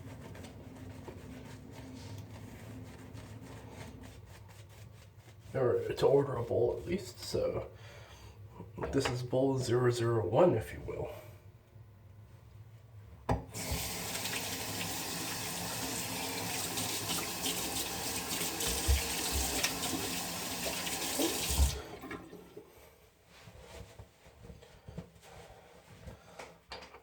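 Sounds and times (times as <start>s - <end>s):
water running into basin: 13.6s - 22.8s.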